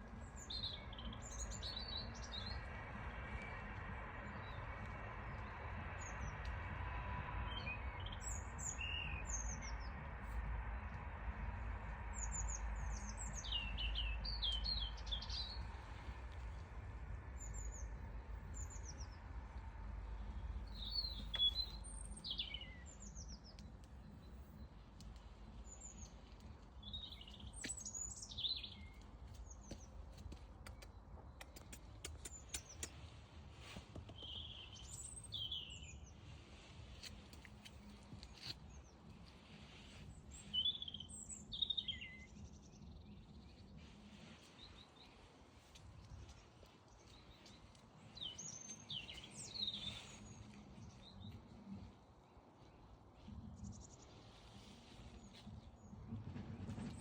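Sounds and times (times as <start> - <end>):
small birds chirping: 0.0 - 6.5, 12.2 - 19.4, 20.2 - 56.0
low background rumble: 0.0 - 39.2.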